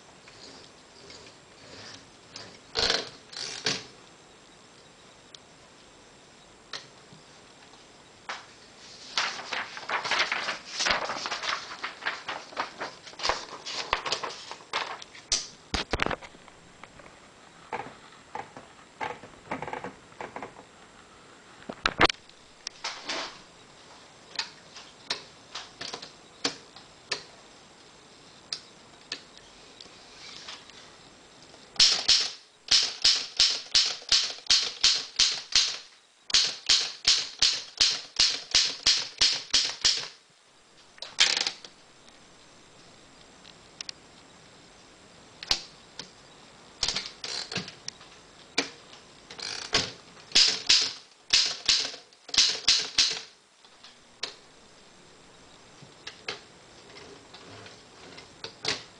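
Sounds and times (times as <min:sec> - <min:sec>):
typewriter keystrokes: 0:31.8 - 0:40.2, 0:49.7 - 0:53.3.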